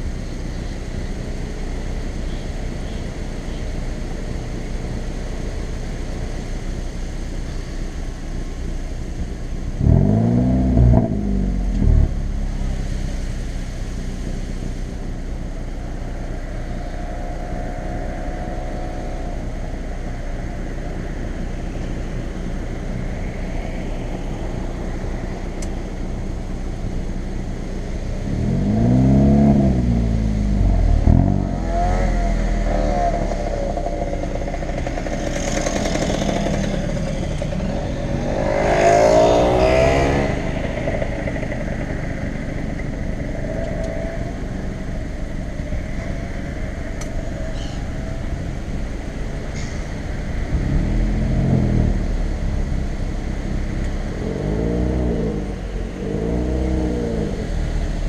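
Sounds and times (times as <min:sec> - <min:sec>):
car engine and exhaust droning: 0:00.0 - 0:58.0
engine revving: 0:09.8 - 0:12.6, 0:28.2 - 0:58.0.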